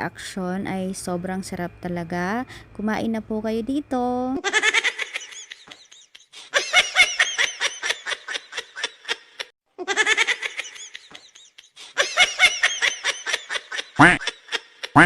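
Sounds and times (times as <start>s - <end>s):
high-pitched laughter: 4.4s - 15.0s.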